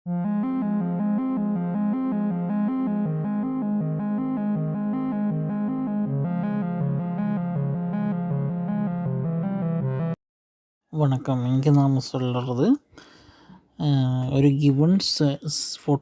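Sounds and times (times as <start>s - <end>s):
synthesizer tune quick repeating notes: 0.1s - 10.2s.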